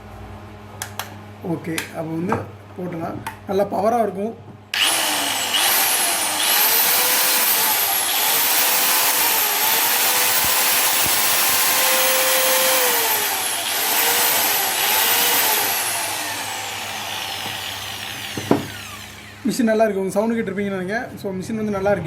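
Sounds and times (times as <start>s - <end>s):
angle grinder running: 4.8s - 20.0s.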